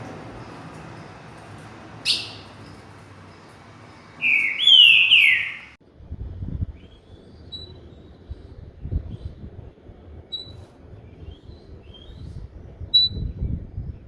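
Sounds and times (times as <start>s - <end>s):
songbird chirp: 0.0s - 5.8s
songbird whistled notes: 4.2s - 5.8s.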